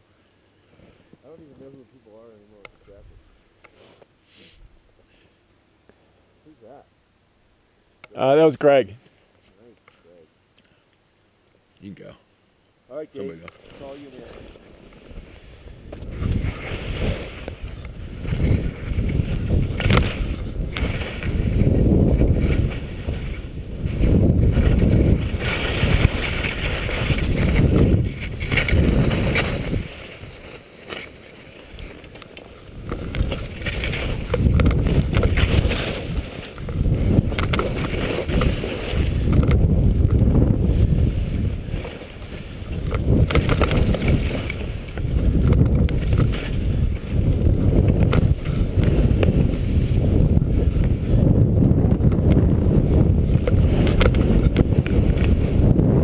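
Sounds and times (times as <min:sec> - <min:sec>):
skis sliding through snow: 0:13.6 - 0:56.0
wind rushing over microphone: 0:15.1 - 0:30.4, 0:31.7 - 0:56.0.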